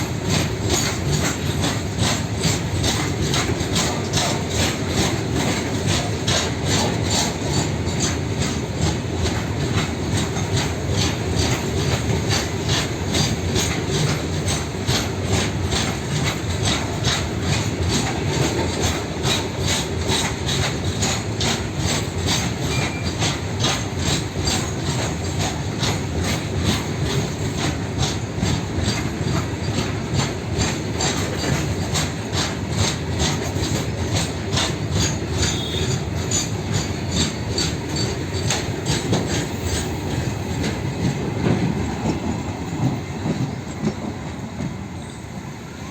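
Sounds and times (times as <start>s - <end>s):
train wheels clicking over rail joints: 0.0s - 45.9s.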